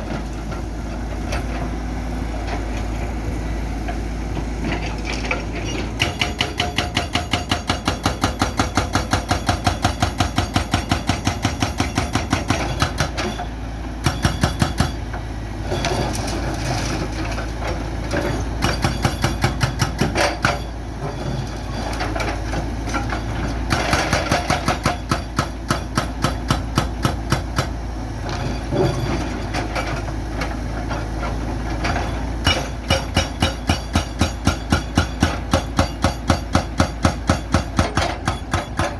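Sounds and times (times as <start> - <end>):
hydraulic breaker hammering concrete: 6.0 - 13.4, 14.0 - 15.1, 18.6 - 20.7, 23.7 - 27.8, 32.4 - 38.9.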